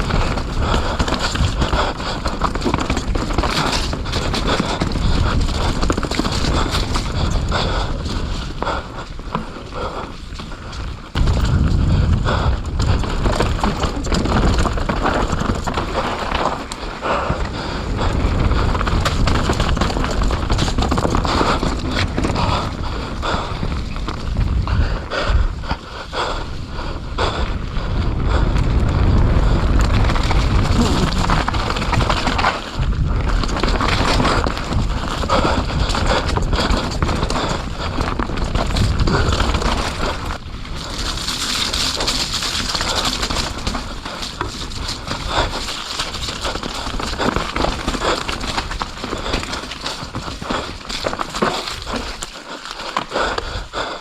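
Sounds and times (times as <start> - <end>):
bike clicks and rattles: 0.0 - 54.0
bike tyre noise: 0.0 - 54.0
heavy wind rumble: 0.0 - 54.0.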